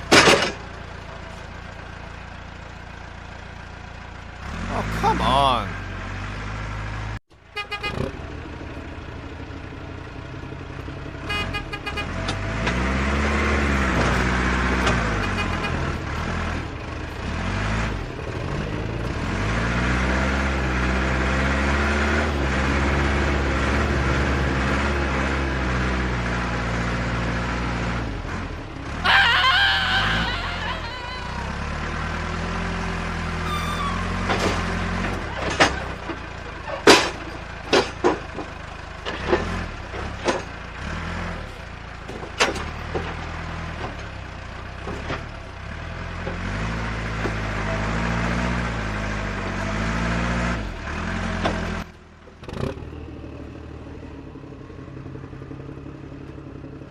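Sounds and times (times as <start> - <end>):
truck engine revving: 4.0 - 7.2, 11.2 - 41.5, 42.6 - 53.9.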